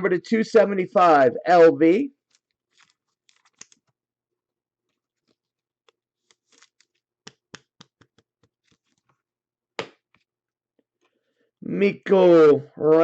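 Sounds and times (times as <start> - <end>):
cards clicking and rustling: 2.2 - 4.0, 5.1 - 9.2.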